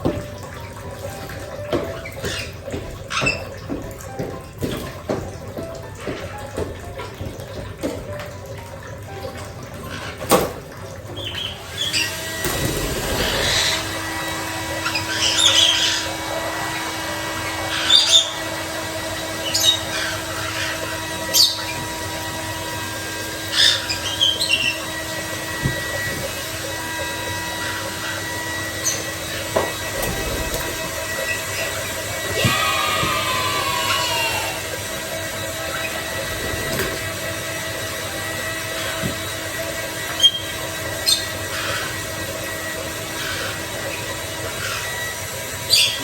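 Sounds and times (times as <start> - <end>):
parrot squawking: 11.1 - 14.0, 14.8 - 21.9, 23.5 - 24.9, 30.0 - 34.8
hair dryer running: 11.6 - 45.8.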